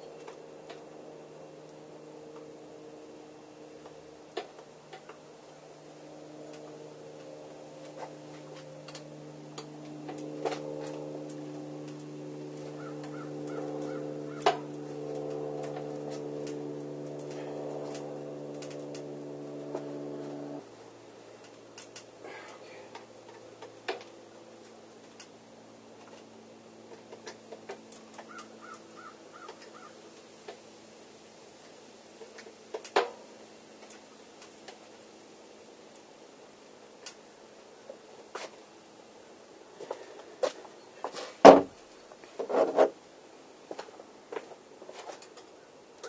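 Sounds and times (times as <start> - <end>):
steady hum: 0.0 - 42.9
crow cawing: 12.8 - 14.5, 28.3 - 30.0.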